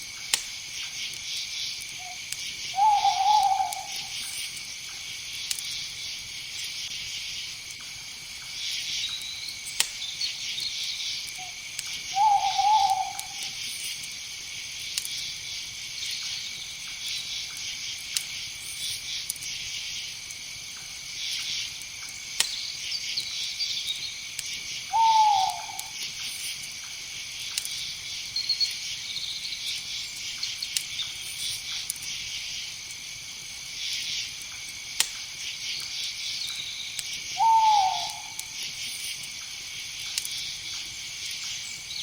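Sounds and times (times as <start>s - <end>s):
night insect chorus: 0.0s - 42.0s
owl hooting: 2.0s - 4.2s, 12.1s - 13.6s, 24.9s - 26.0s, 37.3s - 38.6s.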